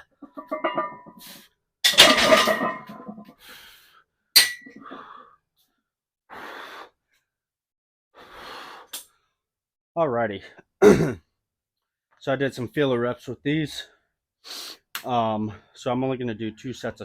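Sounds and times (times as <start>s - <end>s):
metal clank: 0.2s - 1.2s, 1.9s - 3.3s.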